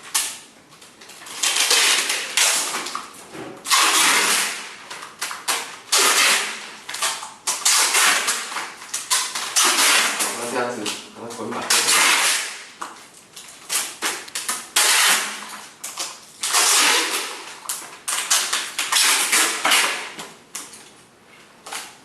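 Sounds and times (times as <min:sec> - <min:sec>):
adhesive tape pulled off roll: 0:01.3 - 0:10.6, 0:11.4 - 0:12.7, 0:13.6 - 0:20.2.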